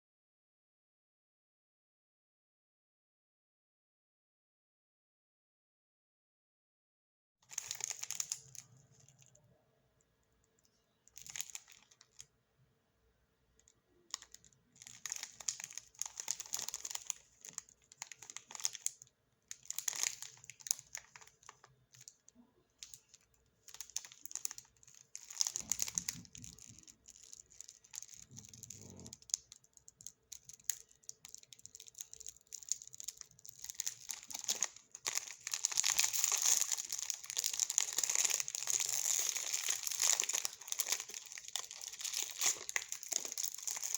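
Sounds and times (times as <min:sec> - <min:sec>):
plastic packaging crinkling: 0:07.4 - 0:09.4, 0:10.6 - 0:12.3, 0:13.6 - 0:43.9.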